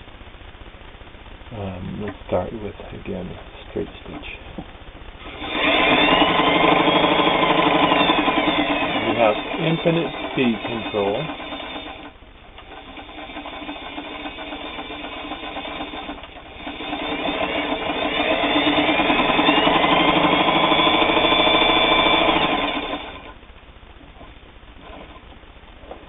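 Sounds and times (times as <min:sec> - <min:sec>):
sewing machine stitching: 0:05.2 - 0:23.4.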